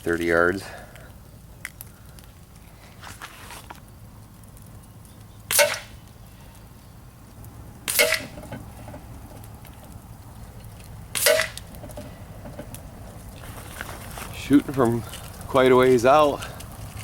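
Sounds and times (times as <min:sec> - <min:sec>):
air rifle shots with twang: 0:05.5 - 0:06.0, 0:07.9 - 0:08.4, 0:11.1 - 0:11.6.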